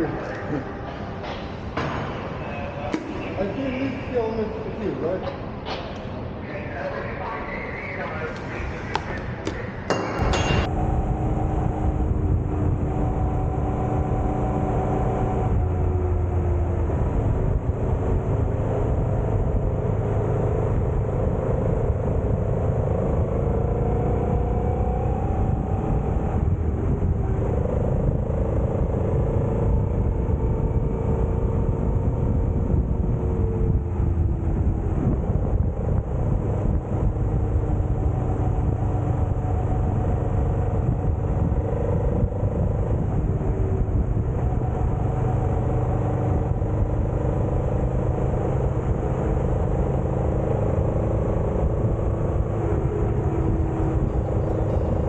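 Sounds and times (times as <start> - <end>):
motorcycle engine running: 50.4 - 55.0.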